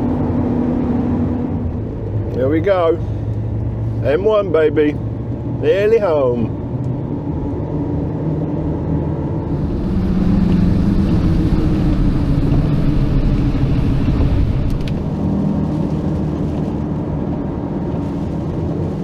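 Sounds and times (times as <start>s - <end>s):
engine drone: 0.0s - 19.0s
road rumble: 0.0s - 19.0s.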